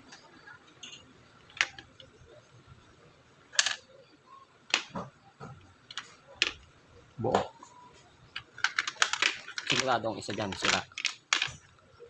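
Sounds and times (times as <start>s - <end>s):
clicks and taps of small parts: 8.3s - 11.7s.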